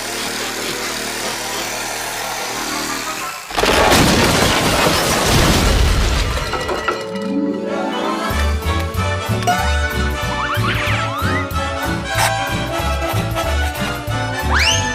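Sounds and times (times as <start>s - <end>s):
cartoon music: 7.0s - 14.9s.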